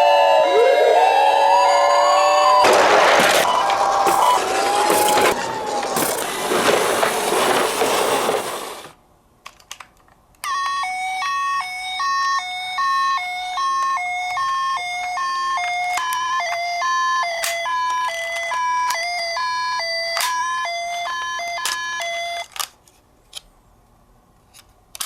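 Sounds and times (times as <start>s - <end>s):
two-tone ambulance siren: 0.0s - 6.7s, 10.4s - 22.5s
dense clattering rush: 2.6s - 9.0s.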